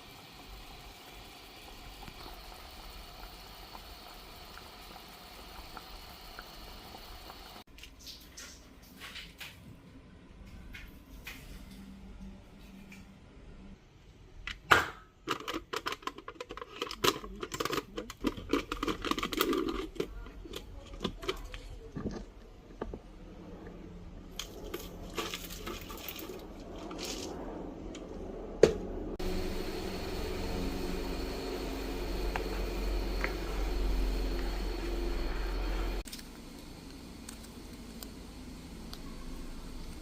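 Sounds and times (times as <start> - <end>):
steady low hum: 18.3 - 40.0
faint high whine: 27.2 - 40.0.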